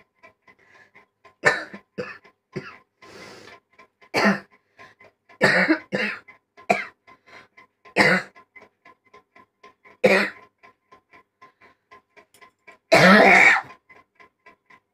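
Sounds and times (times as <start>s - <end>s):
rasping breath in: 3.0s - 3.6s
person coughing hard: 4.2s - 4.5s, 5.4s - 7.0s, 8.0s - 8.3s, 10.0s - 10.4s, 12.9s - 13.7s.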